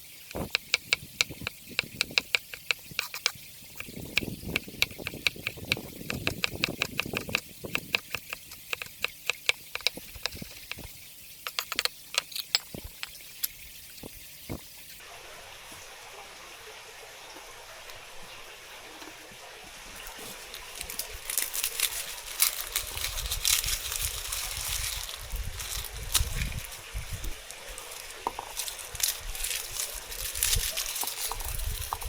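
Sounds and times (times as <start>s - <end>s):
faint steady hiss: 0.0s - 32.0s
clam shells clacking in water: 0.3s - 13.6s
water splashing: 7.6s - 32.0s.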